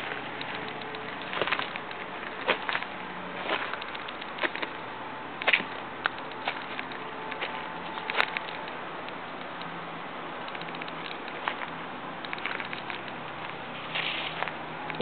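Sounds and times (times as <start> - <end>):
footsteps crunching on branches: 0.0 - 4.8, 13.7 - 14.6.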